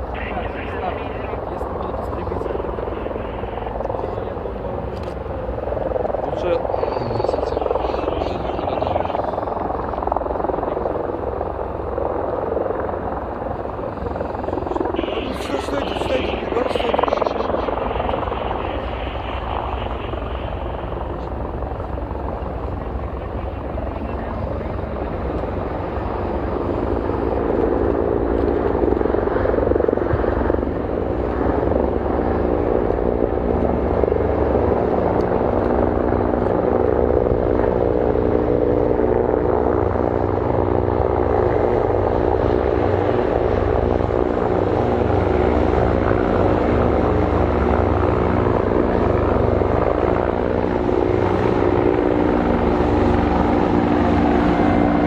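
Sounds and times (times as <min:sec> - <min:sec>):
helicopter rotor chop: 0:00.0 - 0:55.0
helicopter turbine whine: 0:00.0 - 0:55.0.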